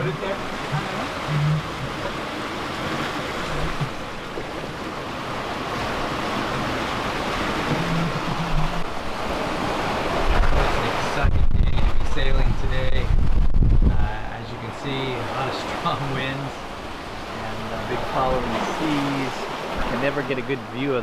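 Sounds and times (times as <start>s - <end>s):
sea water rushing and breaking: 0.0s - 21.0s
wind noise: 7.3s - 14.4s.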